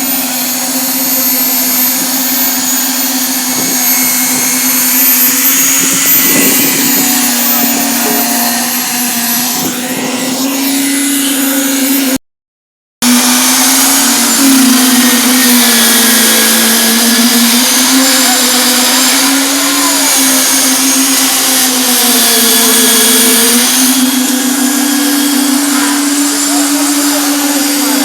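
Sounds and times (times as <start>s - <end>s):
construction machine motor droning: 0.0s - 12.2s, 13.0s - 28.0s.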